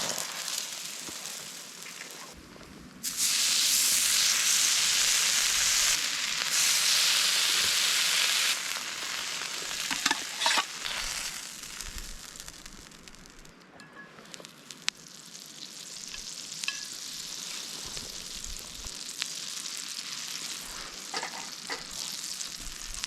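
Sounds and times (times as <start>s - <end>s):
food sizzling in a frying pan: 0.0s - 2.4s, 3.0s - 13.5s, 14.2s - 23.0s.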